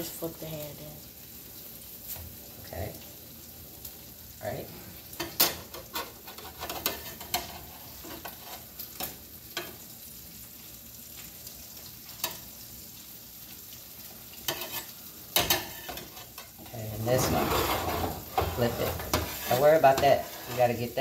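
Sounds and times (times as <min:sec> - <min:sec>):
food sizzling in a pan: 0:00.0 - 0:21.0
spatula scraping a pan: 0:05.2 - 0:09.8, 0:14.3 - 0:21.0.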